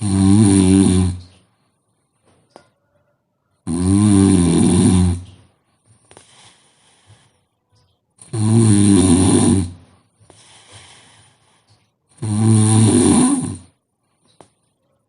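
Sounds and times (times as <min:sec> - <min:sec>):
person snoring loudly: 0:00.0 - 0:01.3, 0:03.6 - 0:05.4, 0:08.2 - 0:11.4, 0:12.1 - 0:13.8
faint breath out: 0:05.8 - 0:07.6, 0:09.9 - 0:12.0.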